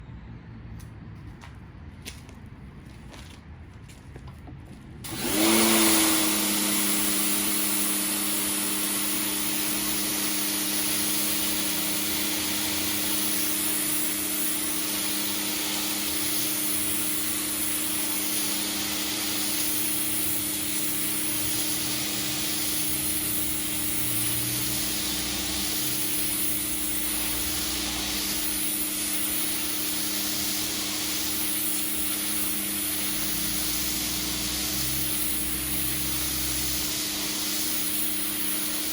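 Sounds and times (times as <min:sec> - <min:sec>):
pressure washer pump motor running: 0:05.0 - 0:38.9
water jet spraying concrete: 0:05.0 - 0:38.9.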